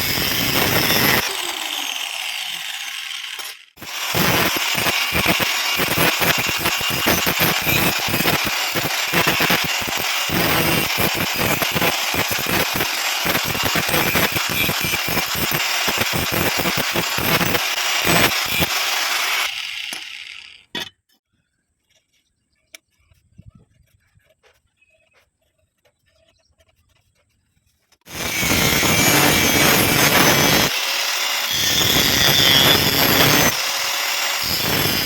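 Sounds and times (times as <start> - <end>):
welding arc crackling: 3.7 - 18.7, 28.1 - 30.8, 31.5 - 33.6.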